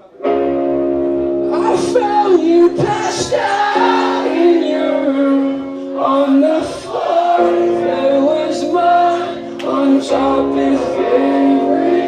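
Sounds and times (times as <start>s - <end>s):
rock band playing: 0.3s - 5.5s
person singing: 1.5s - 12.0s.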